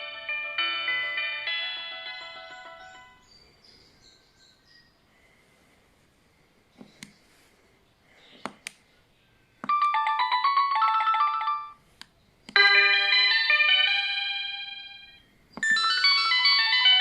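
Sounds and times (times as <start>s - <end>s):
polyphonic phone ringtones: 0.0s - 3.2s, 9.7s - 11.8s, 12.6s - 17.0s.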